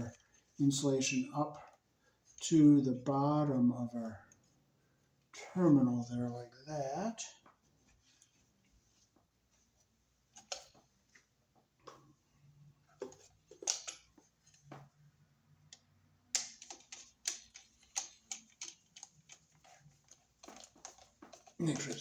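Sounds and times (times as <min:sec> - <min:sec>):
screwdriver clicking and scraping: 0:16.4 - 0:22.0.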